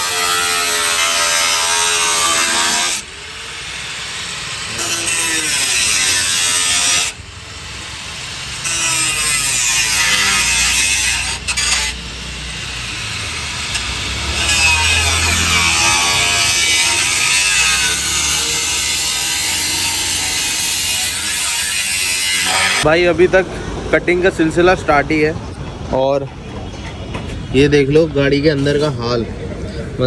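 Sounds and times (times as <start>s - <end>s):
power tool cutting sheet metal: 0.0s - 22.9s.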